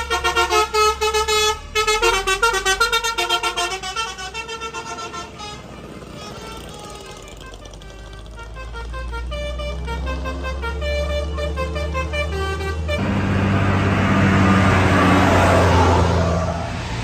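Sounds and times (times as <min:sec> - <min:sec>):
multi-tone musical horn: 0:00.0 - 0:13.3
low engine hum: 0:00.0 - 0:17.0
rushing noise with engine rumble: 0:00.0 - 0:17.0.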